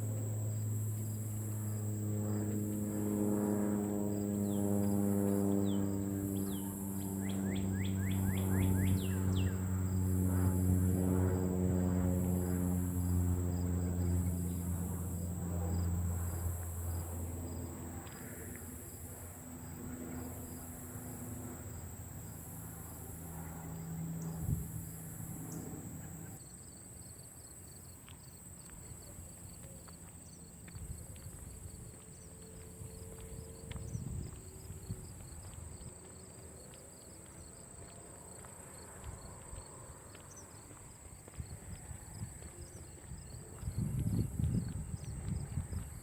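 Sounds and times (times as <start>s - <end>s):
low humming drone: 0.0s - 26.4s
very high insect buzz: 0.0s - 26.4s
crickets chirping: 0.0s - 46.0s
insect high whine: 0.0s - 46.0s.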